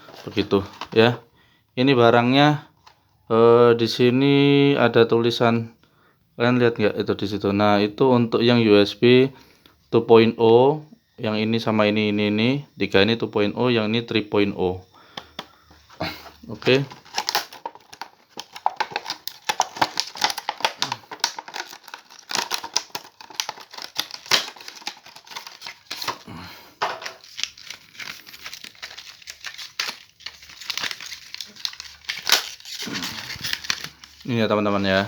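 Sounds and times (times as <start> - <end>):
plastic packaging crinkling: 16.3 - 35.0.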